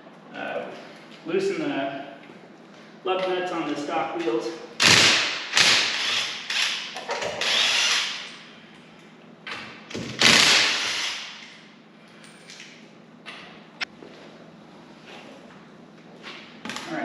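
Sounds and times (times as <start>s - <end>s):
power tool spinning socket: 5.6s - 8.2s, 10.3s - 11.4s.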